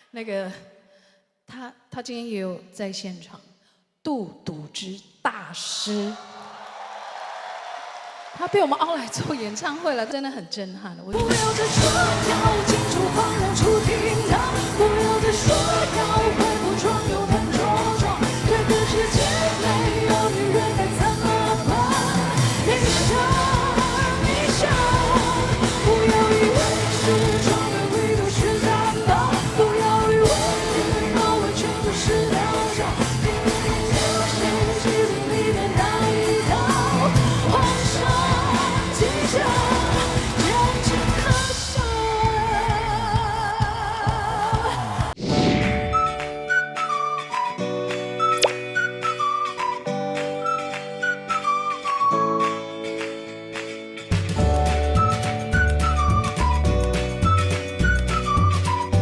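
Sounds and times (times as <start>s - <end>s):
woman singing lead: 10.6s - 45.2s
full band playing pop-rock: 11.2s - 43.3s, 44.2s - 59.0s.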